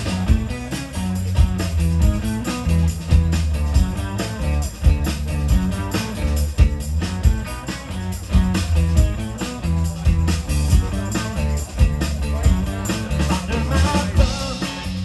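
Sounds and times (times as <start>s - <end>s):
bass line: 0.0s - 15.0s
drum kit beat: 0.0s - 15.0s
guitar: 0.0s - 15.0s.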